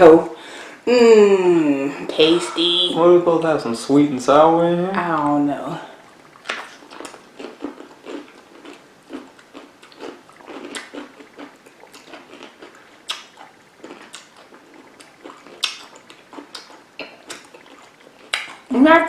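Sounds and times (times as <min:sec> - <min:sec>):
wet chewing: 0:04.9 - 0:18.7
crunching pickles: 0:06.2 - 0:18.8.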